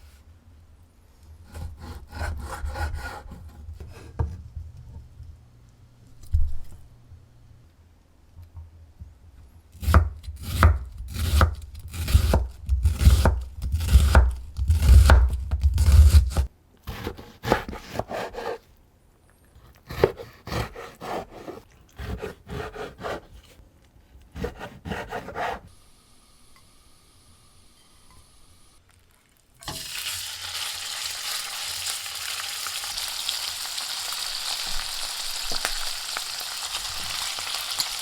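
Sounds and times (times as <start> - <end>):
knife chopping on cutting board: 9.8 - 18.6, 19.9 - 23.4, 24.4 - 25.6.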